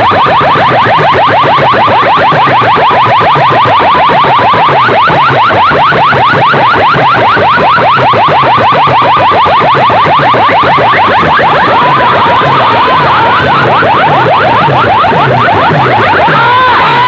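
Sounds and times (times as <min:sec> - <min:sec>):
siren-like whooping alarm effect: 0:00.0 - 0:17.0
throbbing low bass: 0:09.9 - 0:17.0.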